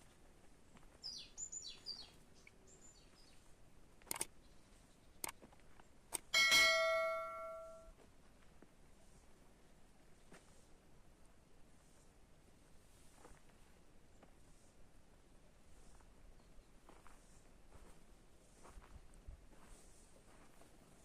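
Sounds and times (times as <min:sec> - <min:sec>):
bird chirps: 0:01.0 - 0:03.4
light clicks: 0:04.0 - 0:04.3
ringing metallic strike: 0:06.4 - 0:07.9.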